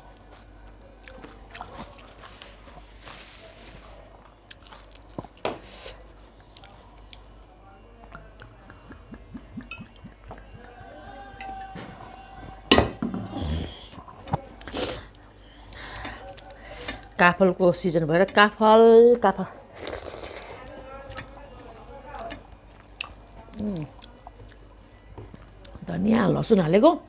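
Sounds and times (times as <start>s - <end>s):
chewing and wet mouth noises: 0.1s - 3.2s, 4.1s - 11.7s, 19.1s - 21.4s, 22.1s - 25.9s.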